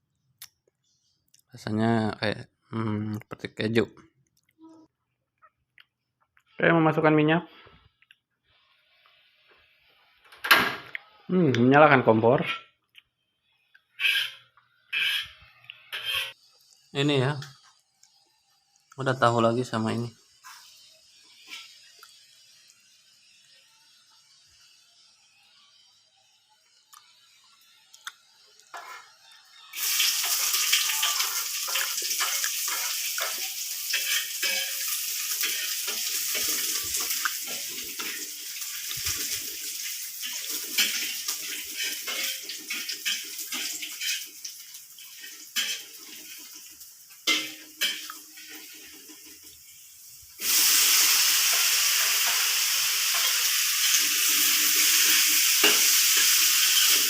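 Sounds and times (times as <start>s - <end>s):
food sizzling in hot oil: 14.0s - 57.0s.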